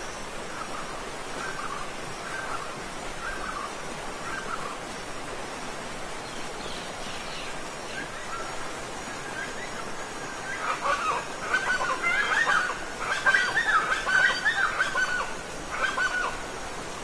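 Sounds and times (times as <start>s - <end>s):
waterfall rushing: 0.0s - 17.0s.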